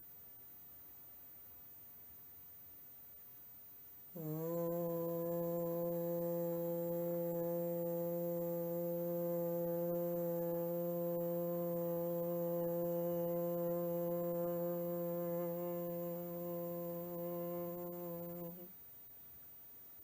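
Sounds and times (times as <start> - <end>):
person humming: 4.2 - 18.7.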